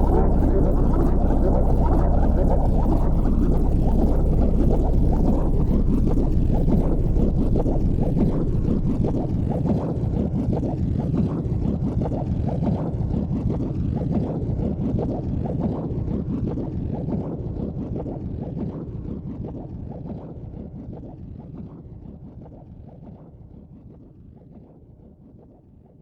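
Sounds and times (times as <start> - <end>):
wind buffeting microphone: 0.0 - 10.3.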